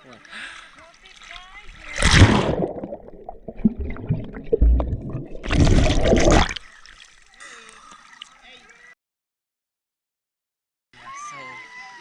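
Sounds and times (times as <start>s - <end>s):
rush of water: 1.0s - 7.4s
splash into water: 1.2s - 8.4s
muffled underwater gurgling: 1.6s - 6.9s
bubble pops: 1.9s - 6.6s.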